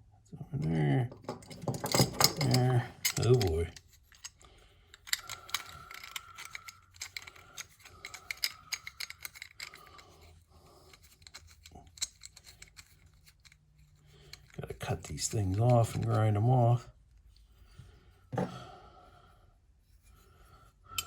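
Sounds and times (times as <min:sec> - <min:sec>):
metallic clicks of hand tools: 0:01.2 - 0:13.6.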